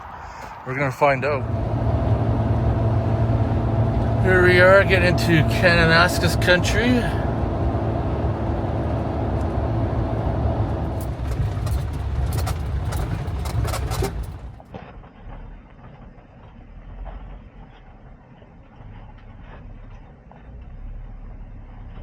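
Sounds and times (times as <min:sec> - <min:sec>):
engine and road noise: 0:00.0 - 0:15.5.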